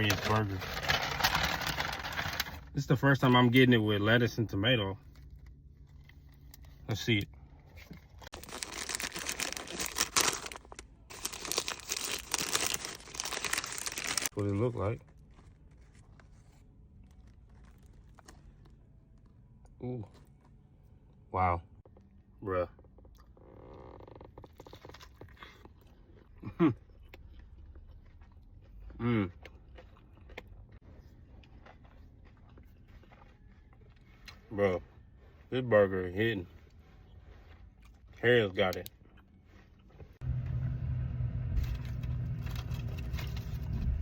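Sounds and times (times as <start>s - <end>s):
person chewing food: 7.9s - 14.3s, 24.3s - 35.4s, 36.6s - 38.2s
car engine running: 40.2s - 44.0s.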